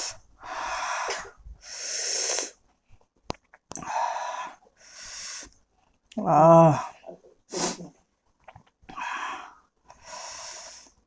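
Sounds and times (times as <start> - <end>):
man breathing hard through mouth: 0.0 - 2.6, 3.8 - 5.6, 8.9 - 11.0.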